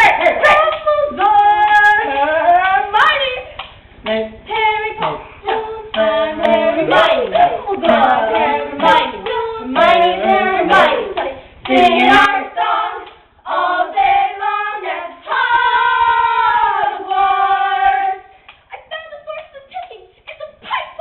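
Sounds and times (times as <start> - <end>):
young voices singing together: 0.0 - 18.5.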